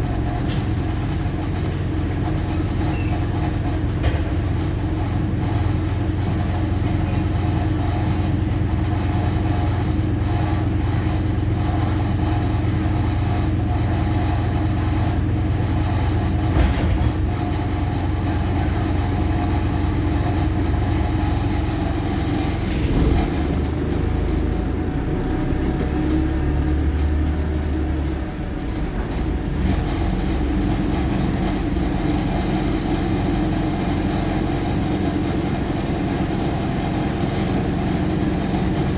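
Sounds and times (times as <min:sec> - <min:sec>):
bus diesel engine drone: 0:00.0 - 0:38.9.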